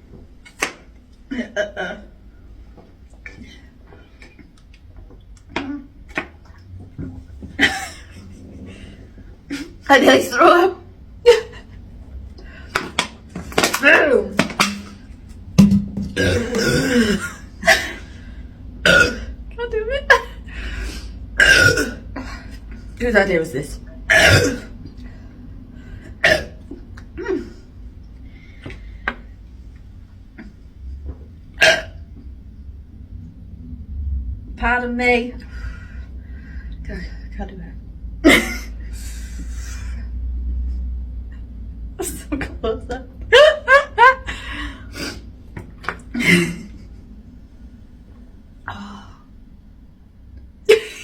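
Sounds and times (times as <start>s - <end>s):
woman burping: 1.3s - 2.2s, 15.6s - 17.8s, 18.8s - 19.4s, 21.4s - 22.3s, 24.1s - 24.8s, 26.2s - 26.6s, 31.6s - 32.0s
weak throat sound: 15.6s - 17.2s
woman coughing: 16.1s - 17.9s, 21.4s - 22.0s, 24.1s - 24.7s.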